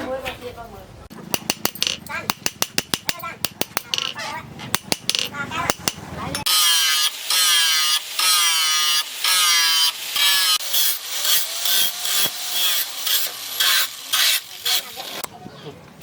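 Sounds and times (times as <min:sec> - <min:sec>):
file scraping steel blade: 0:03.9 - 0:15.3.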